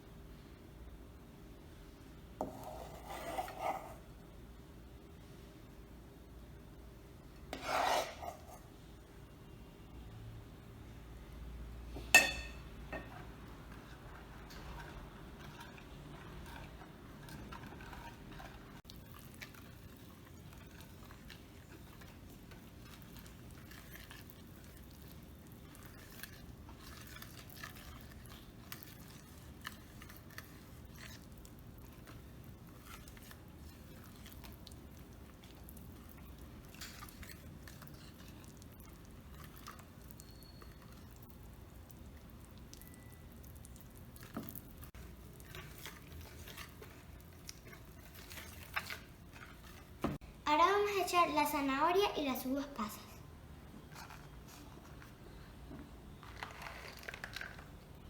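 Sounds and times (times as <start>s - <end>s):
batter squishing: 13.0s - 50.2s, 50.9s - 58.0s.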